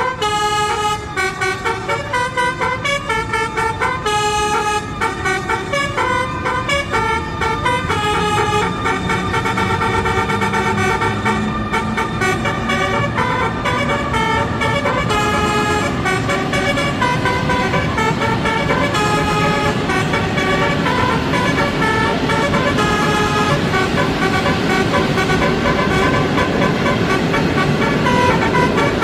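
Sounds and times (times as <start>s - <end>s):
train horn tones: 0.0s - 29.0s
train rumbling: 0.0s - 29.0s.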